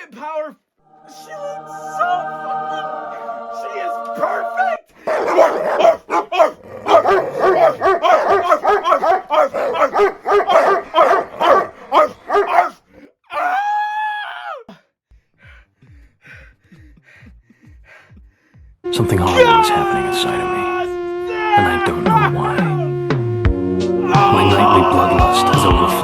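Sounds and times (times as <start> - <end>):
dog howling: 1.0 - 13.7, 24.0 - 26.0
dog barking rapidly: 5.0 - 12.8.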